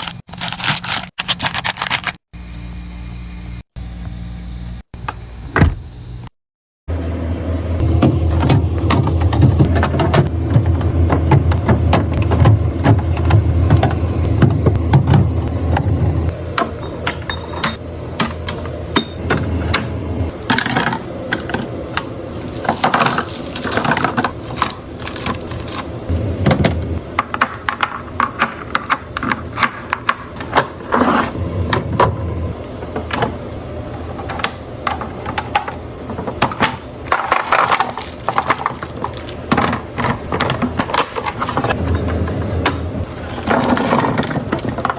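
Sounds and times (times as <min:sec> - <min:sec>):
food packaging clicks and clatters: 0:00.0 - 0:02.2, 0:20.4 - 0:25.9, 0:36.6 - 0:41.7.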